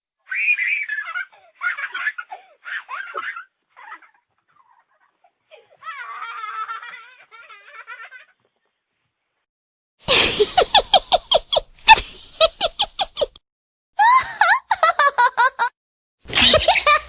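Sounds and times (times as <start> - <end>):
high-pitched giggling laugh: 0.3 - 8.5, 14.0 - 15.7, 16.3 - 17.0
rhythmic ha-ha laugh: 10.1 - 13.4, 14.0 - 17.0.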